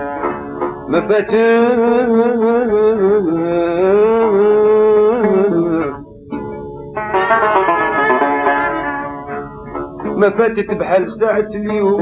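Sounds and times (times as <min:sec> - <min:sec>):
plucked strings: 0:00.0 - 0:12.0
man singing long ornamented note: 0:00.9 - 0:06.0.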